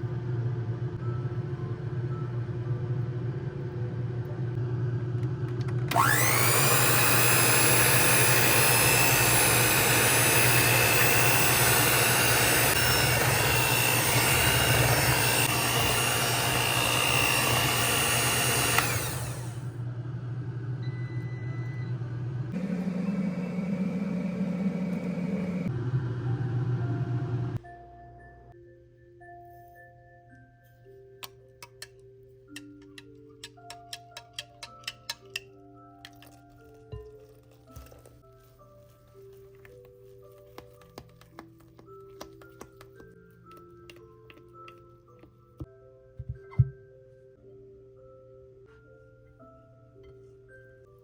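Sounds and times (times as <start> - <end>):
small electric motor whining: 5.9 - 19.7.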